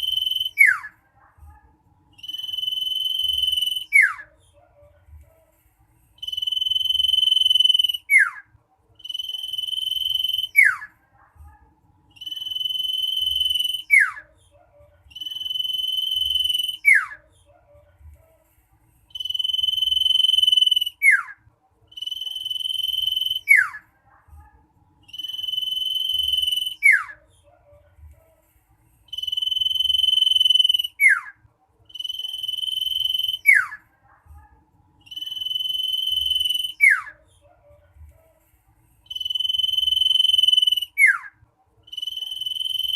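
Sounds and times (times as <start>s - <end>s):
bird singing shrill whistles: 0.0s - 0.9s, 2.2s - 4.2s, 9.0s - 10.9s, 12.2s - 14.2s, 15.1s - 17.2s, 21.9s - 23.8s, 25.1s - 27.2s, 29.1s - 31.3s, 31.9s - 33.8s, 35.1s - 37.1s, 41.9s - 42.9s.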